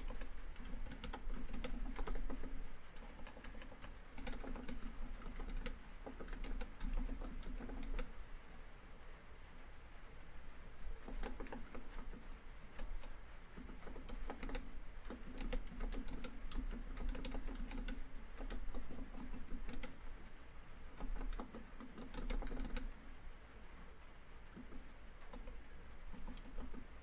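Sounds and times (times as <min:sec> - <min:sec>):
laptop keyboard typing: 0:00.0 - 0:08.2, 0:10.9 - 0:20.2, 0:20.9 - 0:22.9, 0:24.5 - 0:27.0
rain on a tin roof: 0:08.0 - 0:13.7, 0:22.8 - 0:27.0.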